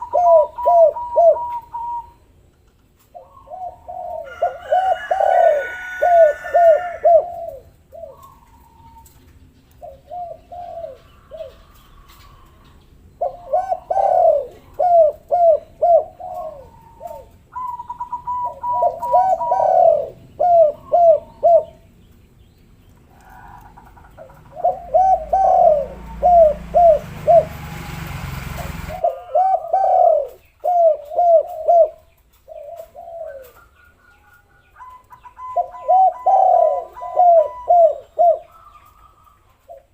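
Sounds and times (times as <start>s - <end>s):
dove cooing: 0.0s - 2.3s, 3.0s - 21.9s, 23.0s - 39.9s
small birds chirping: 0.0s - 27.8s, 28.5s - 39.9s
loud rushing noise: 25.9s - 29.1s.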